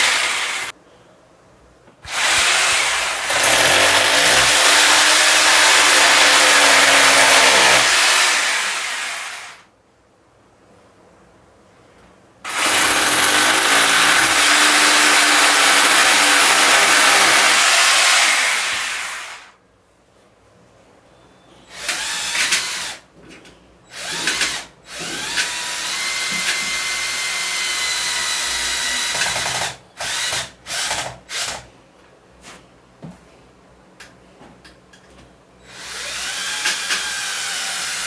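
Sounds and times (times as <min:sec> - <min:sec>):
electric power drill: 0:00.0 - 0:00.7, 0:02.1 - 0:09.6, 0:12.5 - 0:19.5, 0:21.7 - 0:23.0, 0:23.9 - 0:31.6, 0:35.8 - 0:38.0.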